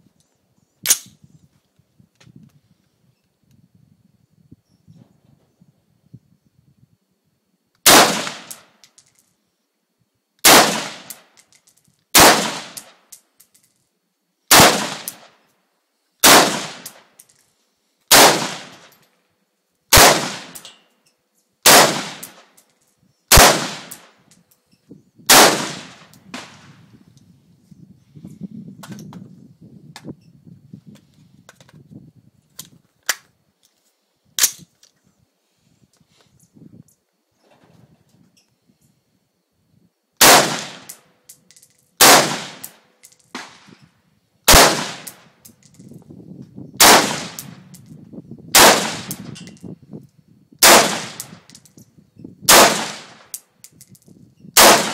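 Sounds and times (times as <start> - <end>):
rifle shots: 7.8 - 8.7, 10.4 - 11.3, 12.1 - 13.0, 14.5 - 15.4, 16.2 - 17.0, 18.1 - 19.0, 19.9 - 20.7, 21.6 - 22.5, 23.3 - 24.1, 25.3 - 26.7, 40.2 - 41.0, 42.0 - 42.8, 43.4 - 43.8, 44.5 - 45.2, 46.8 - 47.6, 48.5 - 49.3, 50.6 - 51.4, 52.5 - 53.3, 54.6 - 54.9.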